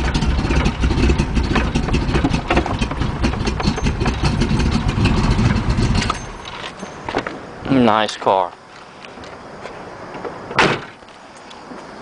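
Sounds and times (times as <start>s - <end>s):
car engine idling: 0.0s - 7.6s.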